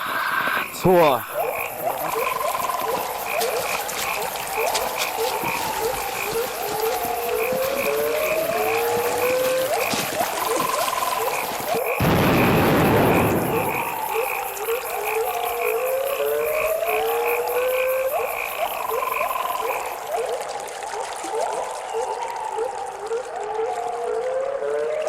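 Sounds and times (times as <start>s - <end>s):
rapid pulsing call: 0.0s - 12.2s
frog chorus whistled calls: 0.0s - 25.0s.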